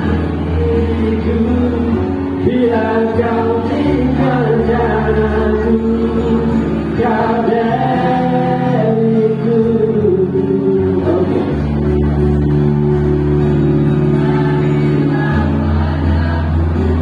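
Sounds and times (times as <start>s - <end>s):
choir singing in parts: 0.0s - 10.2s, 13.7s - 17.0s.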